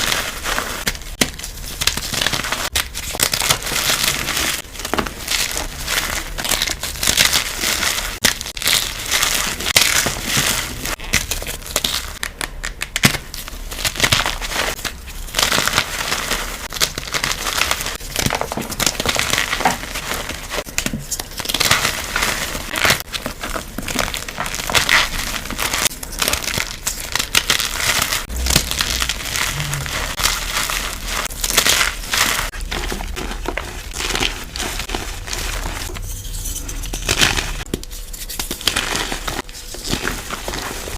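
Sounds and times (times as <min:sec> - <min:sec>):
powder crunching and crackling: 0:00.0 - 0:40.9.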